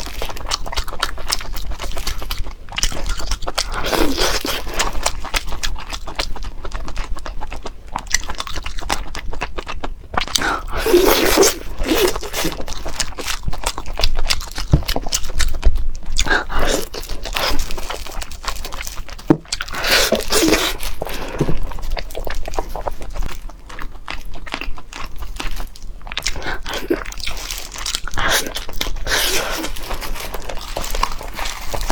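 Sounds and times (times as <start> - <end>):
seafood being chewed crunchily: 0.0 - 31.9
loud mouthfuls: 19.7 - 21.7, 28.0 - 29.9.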